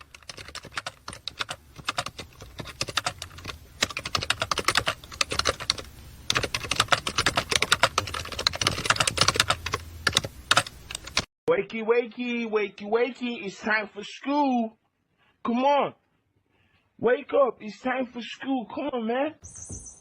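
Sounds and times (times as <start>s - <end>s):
rapid clicking and tapping: 0.0s - 11.3s.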